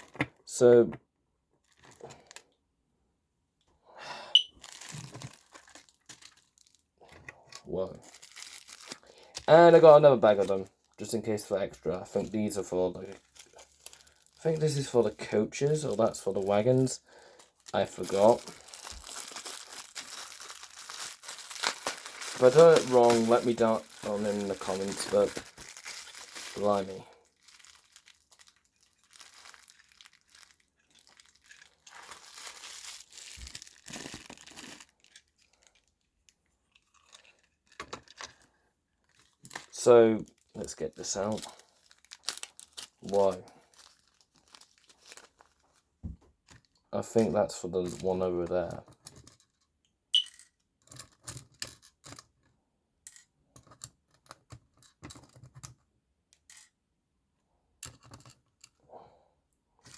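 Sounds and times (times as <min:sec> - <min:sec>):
plastic packaging crinkling: 0:01.6 - 0:02.4, 0:04.4 - 0:45.8.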